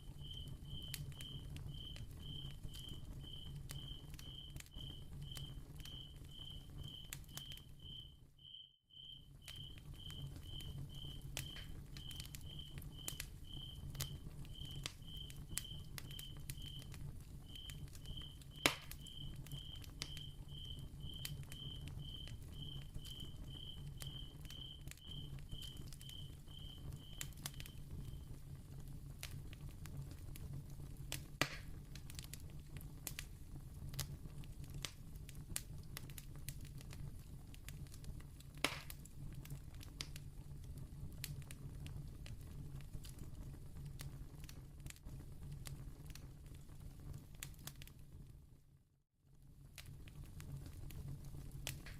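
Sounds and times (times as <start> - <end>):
candle crackling and popping: 0.0 - 48.7, 49.3 - 51.9.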